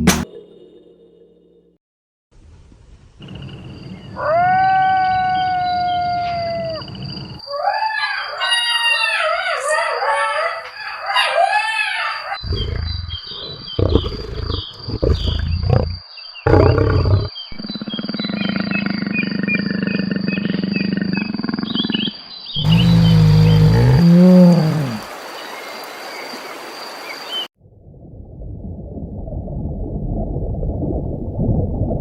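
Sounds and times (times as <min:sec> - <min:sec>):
deep roars: 0:12.4 - 0:15.5, 0:22.6 - 0:25.1
long steady growl: 0:22.6 - 0:25.2.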